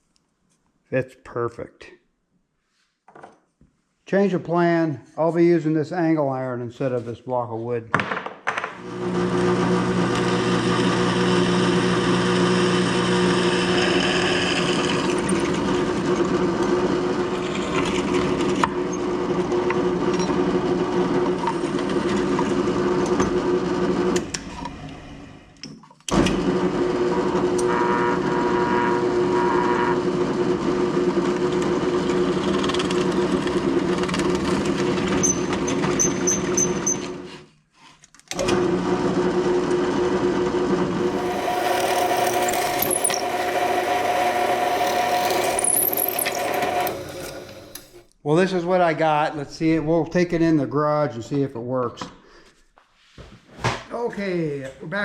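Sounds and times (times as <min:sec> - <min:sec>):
power tool motor humming: 0:08.8 - 0:23.4, 0:26.3 - 0:35.1, 0:41.0 - 0:48.0.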